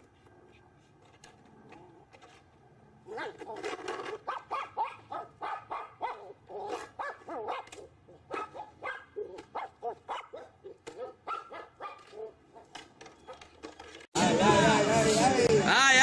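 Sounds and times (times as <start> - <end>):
dog barking and yapping: 3.0 - 13.6.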